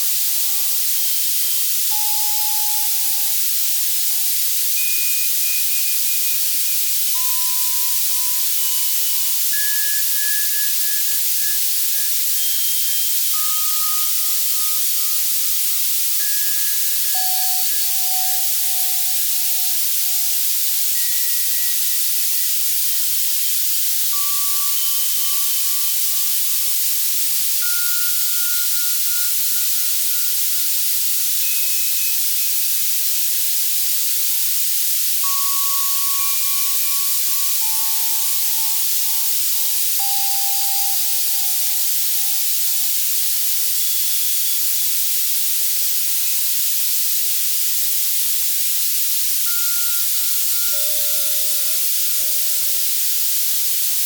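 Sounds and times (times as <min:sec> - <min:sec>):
white noise: 0:00.0 - 0:54.0
synthesized bell notes: 0:04.8 - 0:22.8, 0:35.2 - 0:43.0, 0:49.5 - 0:54.0.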